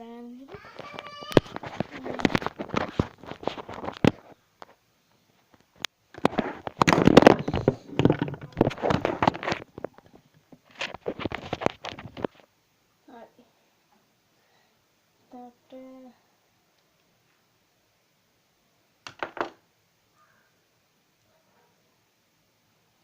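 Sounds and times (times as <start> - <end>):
crackling clattering handling noise: 0.5 - 12.5, 19.0 - 19.6.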